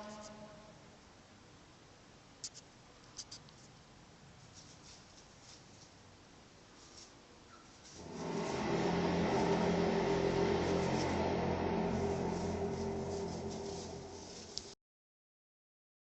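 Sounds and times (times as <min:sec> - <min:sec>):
low droning hum: 0:07.8 - 0:14.8.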